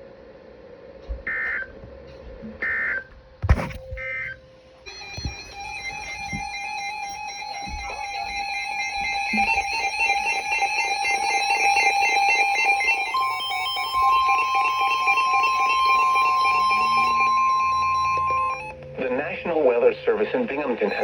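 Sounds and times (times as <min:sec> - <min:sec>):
warbling electronic alarm: 0:02.6 - 0:21.0
steady high electronic tone: 0:04.9 - 0:19.4, 0:20.7 - 0:21.0.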